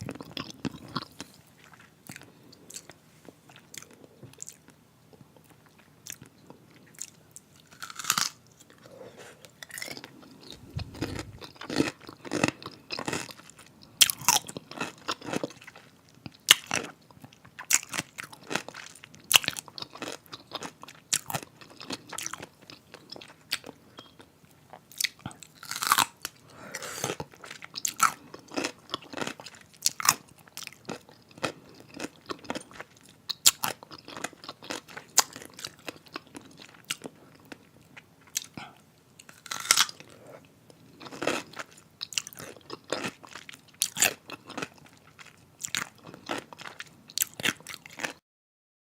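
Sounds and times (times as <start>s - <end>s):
crunching and chewing pickles: 0.0s - 48.2s.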